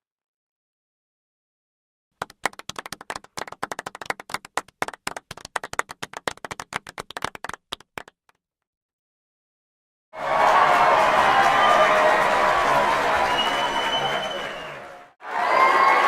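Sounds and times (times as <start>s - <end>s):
small group applauding: 2.2s - 8.4s, 10.2s - 16.0s.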